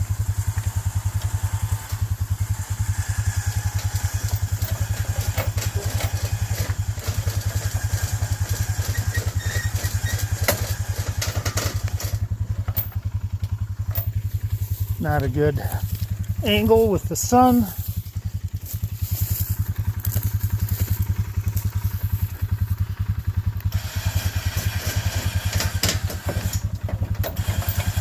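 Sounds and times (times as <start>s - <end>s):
engine idling: 0.0s - 28.0s
knocks and clatters: 3.7s - 16.8s, 24.5s - 28.0s.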